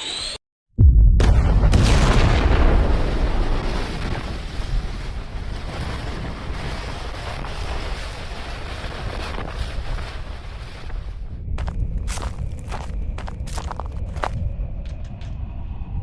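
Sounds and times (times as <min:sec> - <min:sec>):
explosion rumble tail: 0:00.8 - 0:07.7.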